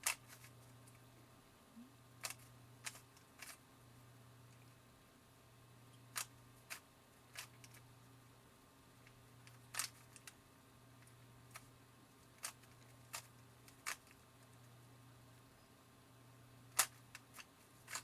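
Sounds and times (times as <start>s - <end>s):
plastic puzzle cube clacking: 0.0s - 0.5s, 2.2s - 3.6s, 6.1s - 7.8s, 9.4s - 10.4s, 12.3s - 14.2s, 16.7s - 18.0s.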